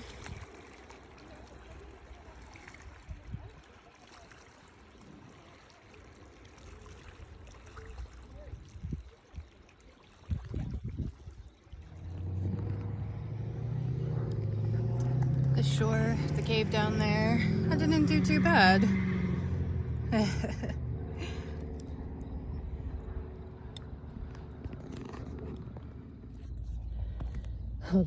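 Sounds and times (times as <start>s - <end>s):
faint trickling water: 0.0s - 18.9s.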